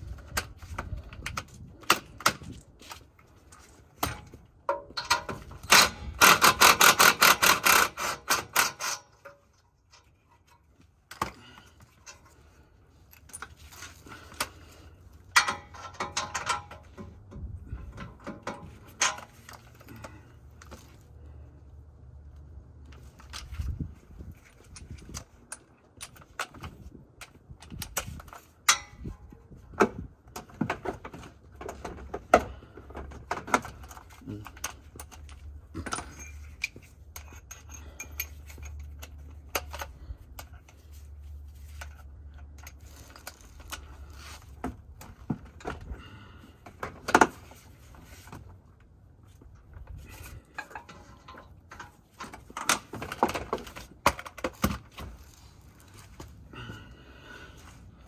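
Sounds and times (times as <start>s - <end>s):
metal tools clinking: 33.7s - 44.2s.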